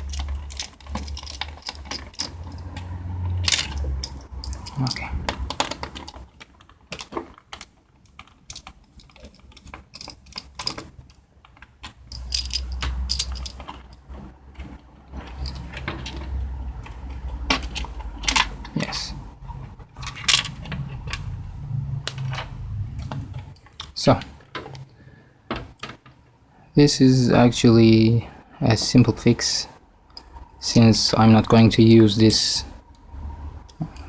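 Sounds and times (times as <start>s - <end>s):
low handling rumble: 0.0s - 6.4s, 12.1s - 23.7s
metal clicks and clinks: 0.0s - 14.1s, 15.3s - 16.2s.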